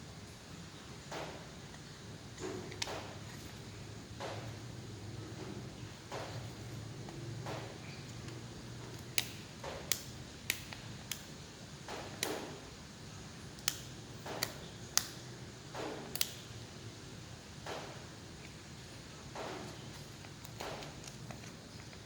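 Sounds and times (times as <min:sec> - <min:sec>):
soft handling and rustling: 0:17.8 - 0:22.0.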